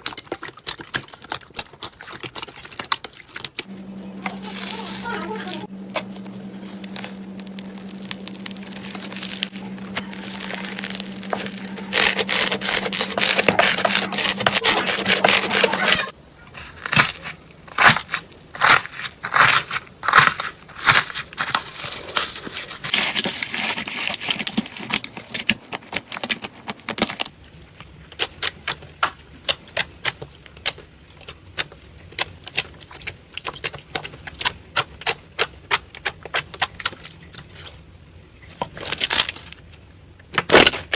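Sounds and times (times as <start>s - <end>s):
low steady hum: 3.6s - 26.0s
slime crackling and popping: 5.9s - 27.3s.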